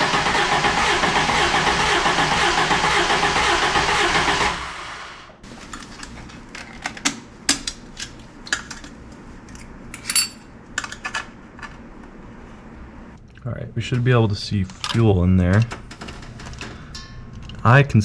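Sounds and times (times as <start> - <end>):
engine cranking without starting: 0.0 - 5.3.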